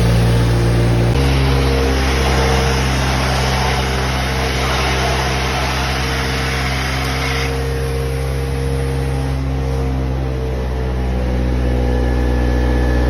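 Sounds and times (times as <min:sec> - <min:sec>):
loud suction hiss: 0:00.0 - 0:09.3
truck engine running: 0:00.0 - 0:13.0.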